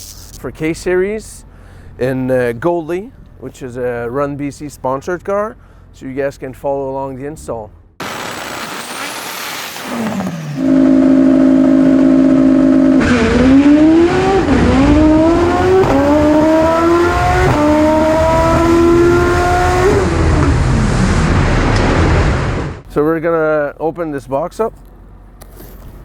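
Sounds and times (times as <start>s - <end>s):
race car engine accelerating: 9.8s - 22.8s.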